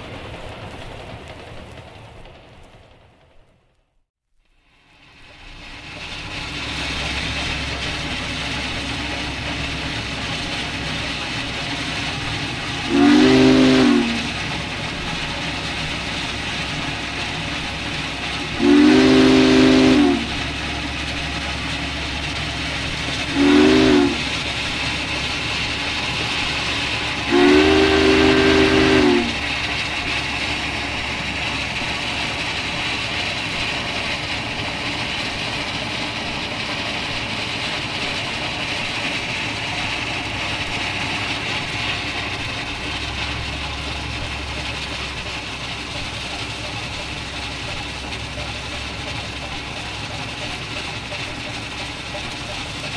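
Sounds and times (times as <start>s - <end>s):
steam locomotive rumbling: 0.0s - 52.9s
steam whistle blasts: 12.2s - 15.2s, 18.4s - 20.7s, 23.3s - 24.8s, 26.5s - 29.9s.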